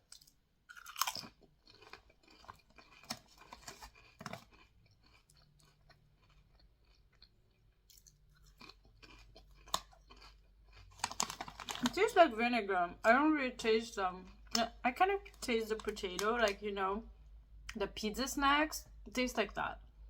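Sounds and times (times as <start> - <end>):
crunchy potato chips chewing: 0.0 - 12.2.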